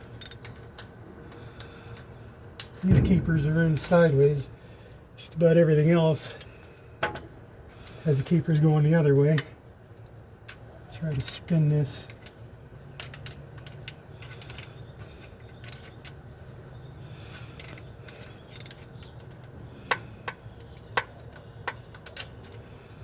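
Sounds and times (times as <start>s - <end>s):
small metal clicks and taps: 9.3s - 16.2s, 17.3s - 22.7s.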